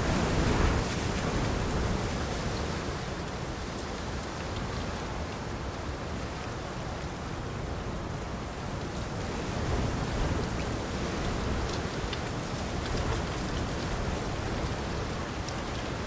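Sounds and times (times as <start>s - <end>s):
heavy rain pouring: 0.0s - 2.6s.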